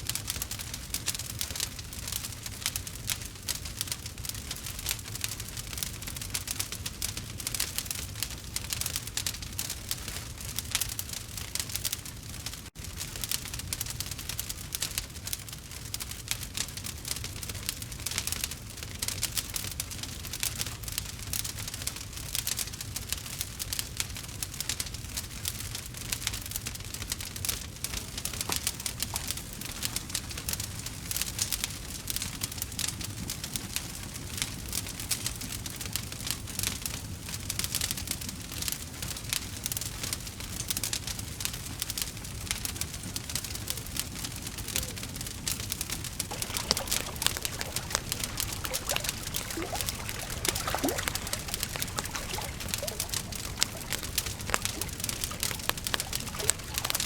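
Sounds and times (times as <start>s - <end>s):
wood fire crackling: 46.3s - 57.0s.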